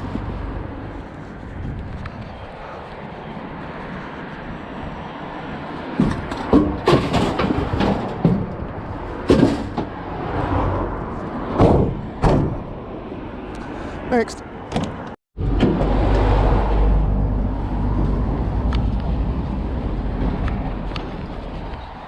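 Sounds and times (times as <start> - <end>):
scrap metal clanking and thudding: 6.0 - 10.0.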